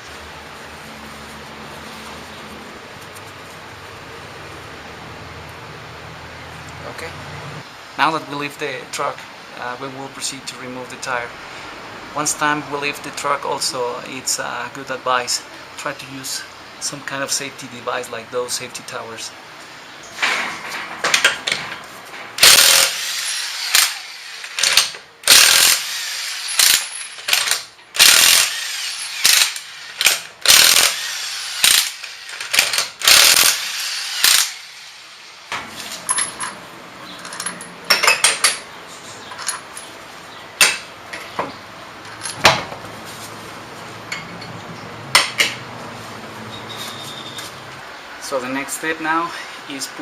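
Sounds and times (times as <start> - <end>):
impact wrench rattling bursts: 22.4 - 35.4.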